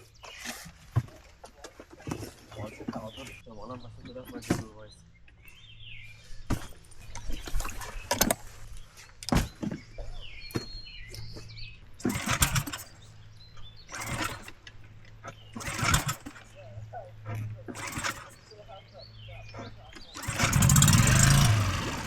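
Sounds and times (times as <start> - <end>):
gear knocking and thumping: 12.0 - 13.0, 13.9 - 16.6, 17.3 - 18.4, 20.0 - 22.0
boat motor idling: 12.0 - 22.0.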